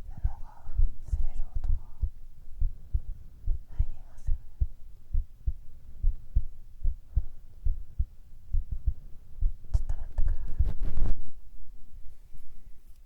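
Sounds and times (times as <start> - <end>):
human heartbeat: 0.0 - 11.4
rustling noise: 7.7 - 13.0.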